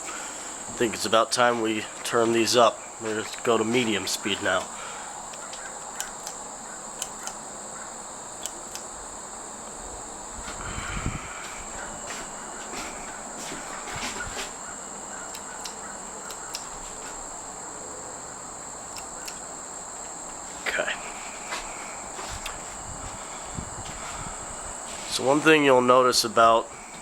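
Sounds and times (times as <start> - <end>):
crickets chirring: 0.0 - 27.0
faint clicks: 4.6 - 6.4, 7.0 - 7.4, 15.3 - 16.7.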